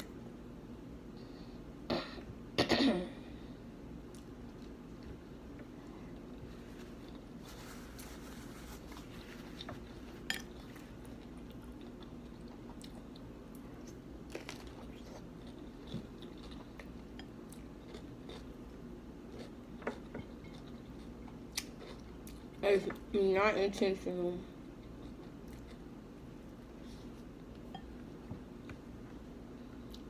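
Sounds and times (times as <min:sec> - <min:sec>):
steady low hum: 0:00.0 - 0:30.0
person chewing and crunching food: 0:04.0 - 0:22.6, 0:24.7 - 0:27.7.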